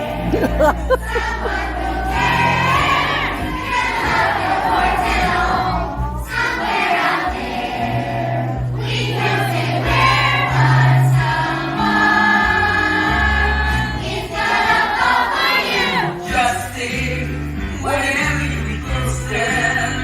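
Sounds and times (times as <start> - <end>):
backing track with bass line: 0.0 - 6.5
voices singing together: 0.0 - 20.0.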